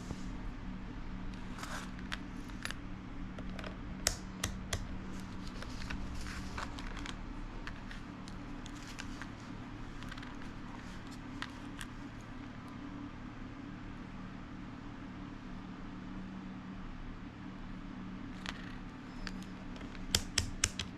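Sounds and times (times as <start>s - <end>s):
steady low hum: 0.0s - 20.9s
hard objects clicking and tapping: 19.3s - 20.9s.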